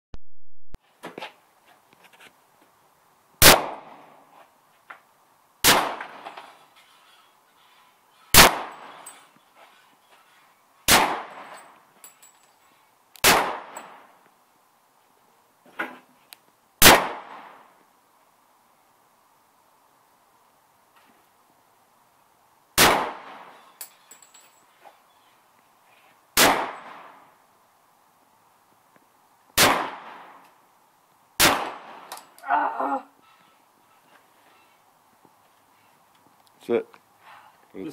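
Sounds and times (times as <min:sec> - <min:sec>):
rifle shots: 0:03.4 - 0:03.9, 0:05.6 - 0:06.2, 0:08.4 - 0:09.0, 0:10.9 - 0:11.6, 0:13.2 - 0:14.0, 0:16.8 - 0:17.6, 0:22.8 - 0:23.6, 0:26.4 - 0:27.2, 0:29.6 - 0:30.3, 0:31.4 - 0:32.1.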